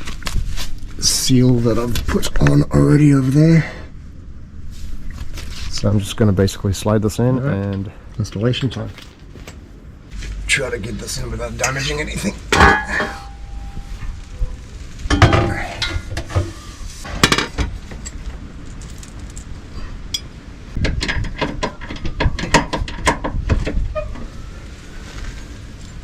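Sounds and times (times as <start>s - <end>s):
metal exhaust pipe clanking: 11.6s - 14.2s, 15.1s - 18.2s.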